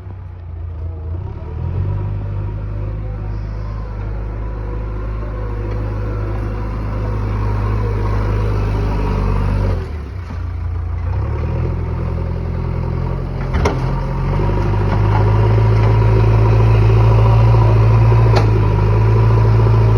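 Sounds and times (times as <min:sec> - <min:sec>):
excavator diesel engine running: 0:00.0 - 0:19.9.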